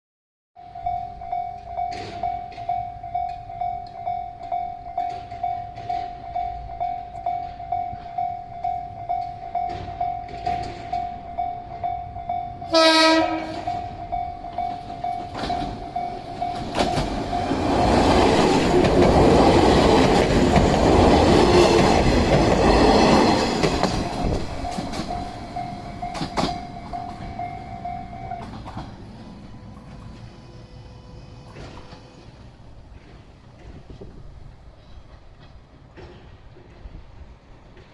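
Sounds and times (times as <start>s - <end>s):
level crossing warning bell: 0.6s - 31.2s
rail-joint clicks: 0.6s - 37.9s
train wheels clattering on rails: 1.5s - 11.9s, 12.7s - 30.6s, 31.3s - 37.9s.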